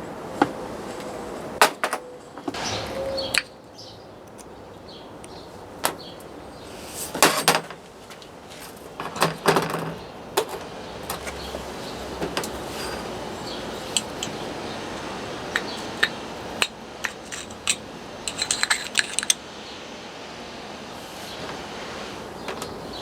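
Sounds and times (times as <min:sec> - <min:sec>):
tools knocking and clicking: 0:15.5 - 0:19.4.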